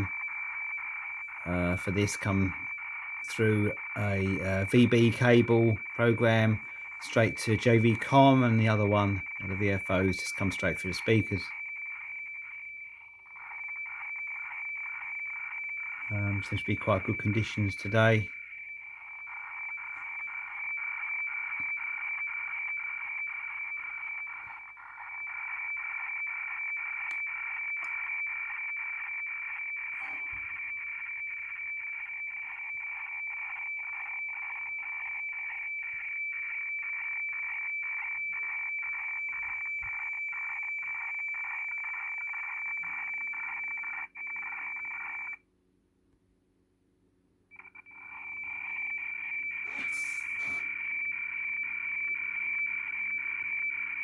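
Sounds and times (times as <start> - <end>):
pulsing radiofax tone over hiss: 0.0 - 12.6, 13.3 - 45.4, 47.6 - 54.0.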